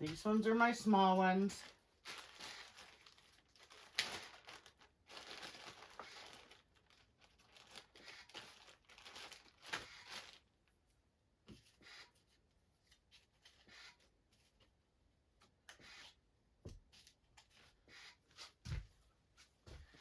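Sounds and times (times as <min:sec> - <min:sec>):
bag crinkling and rustling: 0:00.0 - 0:10.5.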